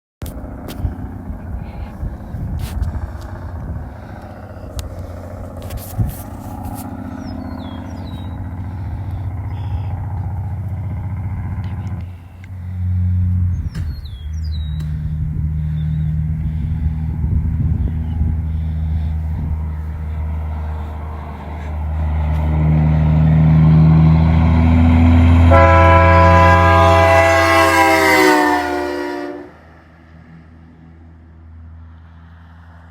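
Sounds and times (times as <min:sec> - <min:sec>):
diesel engine running: 0:00.2 - 0:32.9
horn-like chord: 0:24.8 - 0:29.6.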